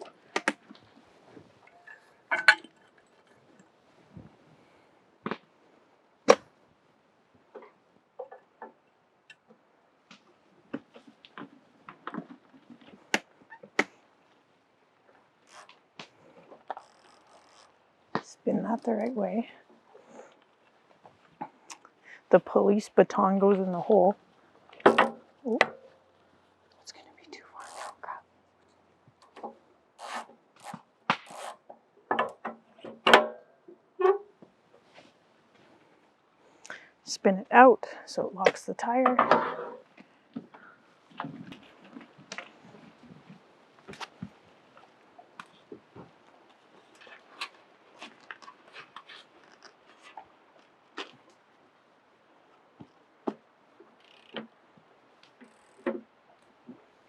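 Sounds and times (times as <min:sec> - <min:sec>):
wheelchair parts clicking and knocking: 0:00.0 - 0:00.9, 0:01.6 - 0:03.6, 0:07.5 - 0:13.9, 0:15.4 - 0:19.2, 0:24.7 - 0:25.9, 0:29.2 - 0:34.2, 0:39.0 - 0:43.2
wheelchair parts scraping: 0:15.4 - 0:17.8, 0:27.4 - 0:28.2, 0:30.0 - 0:31.6, 0:39.2 - 0:39.9.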